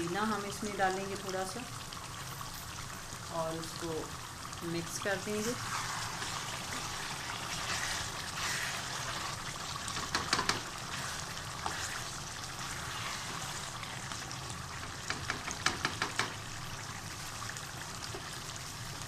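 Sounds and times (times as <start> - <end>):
food sizzling in a pan: 0.0 - 19.0.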